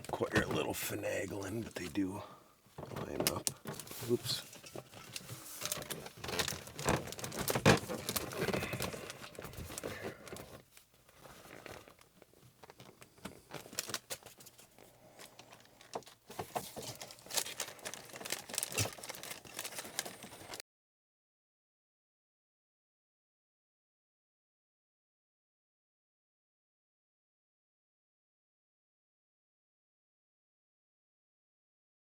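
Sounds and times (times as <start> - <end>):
curtain fabric rustling: 3.0 - 9.6.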